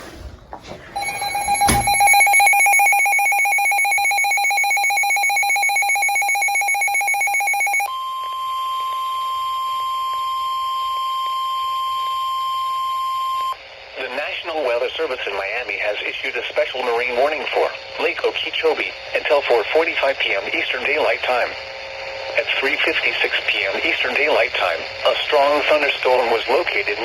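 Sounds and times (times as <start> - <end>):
pulsing electronic alarm tone: 1.0 - 13.6
steady single-pitch warning tone: 1.0 - 13.6.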